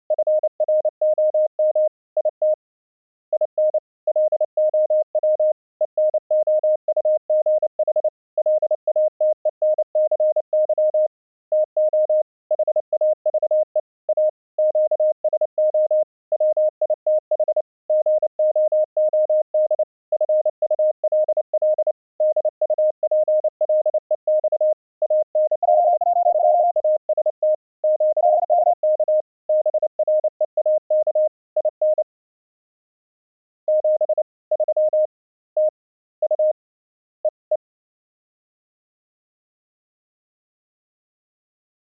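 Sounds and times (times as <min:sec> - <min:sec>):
morse code tone: 0:21.2 - 0:32.0.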